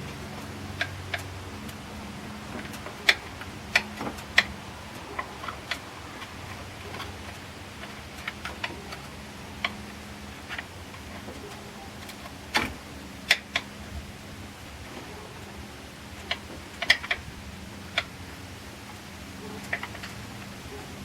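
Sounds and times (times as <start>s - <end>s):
hand tools clicking on metal: 2.4s - 13.8s, 14.9s - 17.2s.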